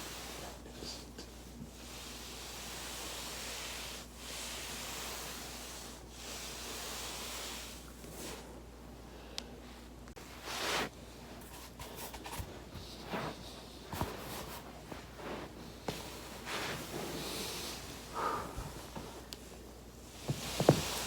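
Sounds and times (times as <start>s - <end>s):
body rustling on foam roller: 10.2s - 21.0s.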